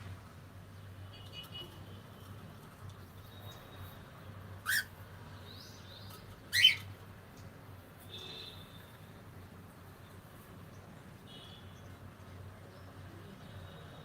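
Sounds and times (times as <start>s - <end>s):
cockatiel sharp calls: 4.6s - 4.9s, 6.5s - 6.9s.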